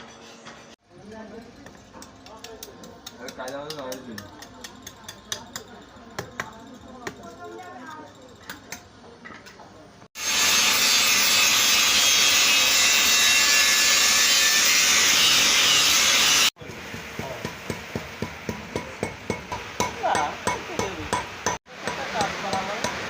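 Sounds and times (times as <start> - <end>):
power tool grinding: 10.2 - 16.6
hammer strikes on metal: 16.6 - 23.0.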